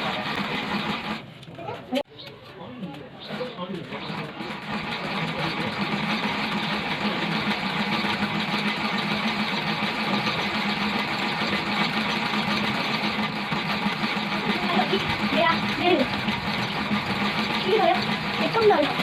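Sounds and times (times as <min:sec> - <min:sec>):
washing machine motor humming: 0:04.0 - 0:19.0.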